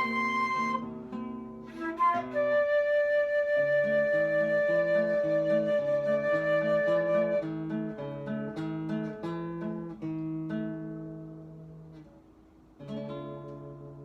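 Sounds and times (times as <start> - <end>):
held flute note: 0.0 - 0.9, 1.7 - 7.5
acoustic guitar arpeggio: 0.0 - 14.0.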